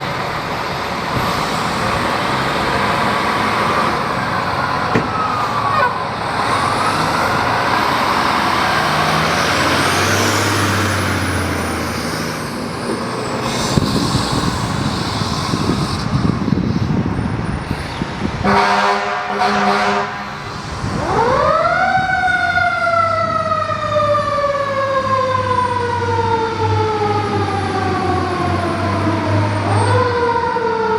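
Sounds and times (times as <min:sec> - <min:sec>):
heavy truck engine and road noise: 0:00.0 - 0:30.9
long air horn blast: 0:18.4 - 0:20.4
emergency siren winding: 0:21.0 - 0:30.9.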